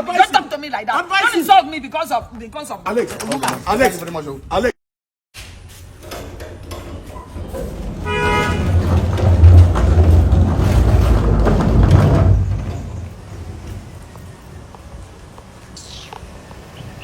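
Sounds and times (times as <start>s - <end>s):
vehicle horn toot: 8.0s - 9.0s.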